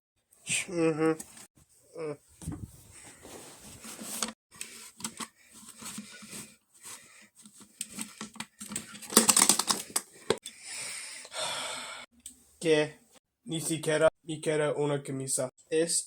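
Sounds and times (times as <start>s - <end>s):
clothes rustling: 2.3s - 8.3s.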